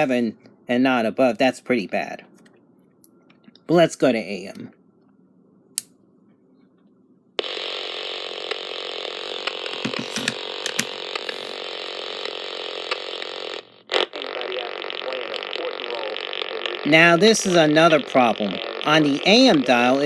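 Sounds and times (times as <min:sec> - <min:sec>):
radio static with clicks: 0:07.4 - 0:07.8, 0:08.4 - 0:20.0.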